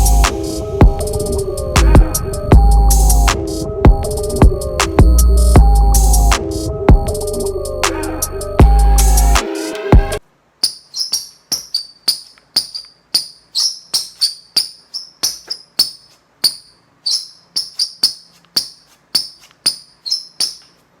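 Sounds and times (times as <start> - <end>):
high-pitched chirps: 0.0 - 9.4.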